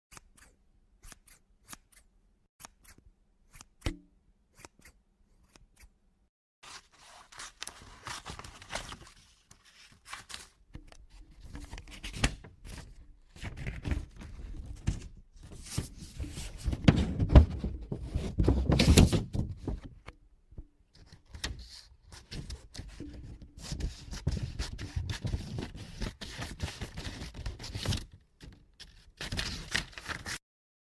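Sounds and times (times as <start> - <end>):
scissors cutting paper: 0.1 - 4.0, 4.6 - 5.9.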